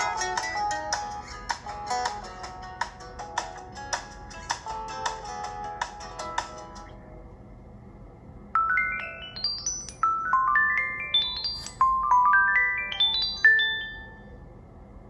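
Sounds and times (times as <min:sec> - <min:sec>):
phone ringtone rising notes: 0:08.6 - 0:14.4.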